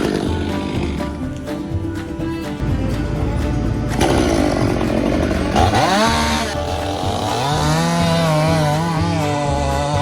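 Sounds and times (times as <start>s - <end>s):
chainsaw running: 0.0s - 1.2s, 3.9s - 10.0s
background music: 0.0s - 10.0s.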